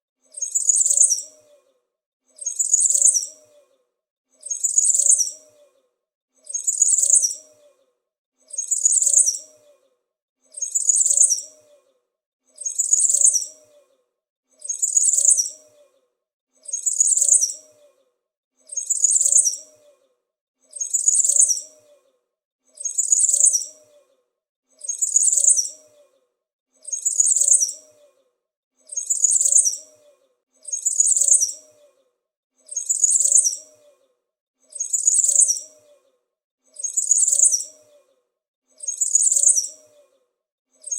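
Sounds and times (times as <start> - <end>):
small bird chirping: 0.3 - 1.7, 2.3 - 3.8, 4.4 - 5.8, 6.4 - 9.9, 10.5 - 14.0, 14.6 - 18.0, 18.6 - 20.1, 20.7 - 24.2, 24.8 - 26.2, 26.8 - 28.2, 28.8 - 34.1, 34.7 - 36.1, 36.7 - 38.2, 38.8 - 40.2.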